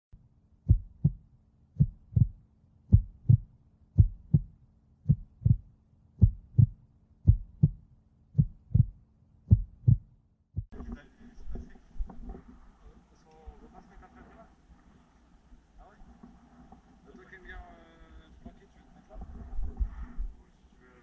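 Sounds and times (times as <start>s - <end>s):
heartbeat thumps: 0.6s - 1.2s, 1.8s - 10.8s, 19.2s - 20.4s
faint steady hum: 10.7s - 21.0s.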